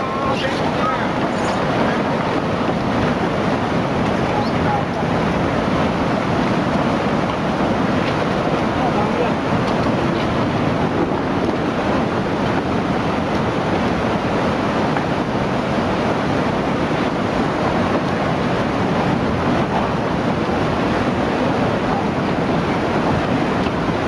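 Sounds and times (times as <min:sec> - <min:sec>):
floodwater rushing: 0:00.0 - 0:24.0.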